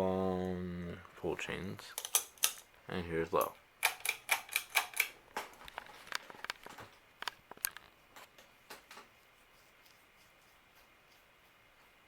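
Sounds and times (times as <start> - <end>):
fan pull chains clicking against fixture: 3.4 - 5.1.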